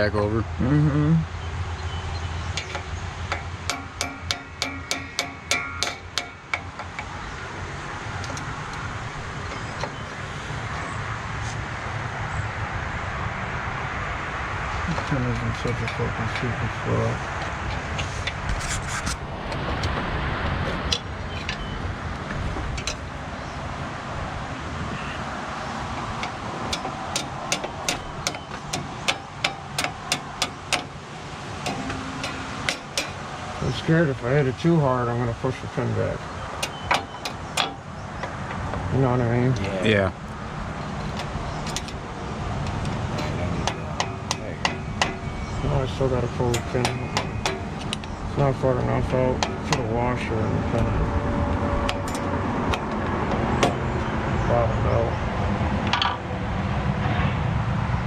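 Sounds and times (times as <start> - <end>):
hammer striking steel pin: 2.6 - 7.2, 26.0 - 31.0, 31.6 - 33.3, 36.6 - 38.3, 42.8 - 48.2, 49.4 - 50.0.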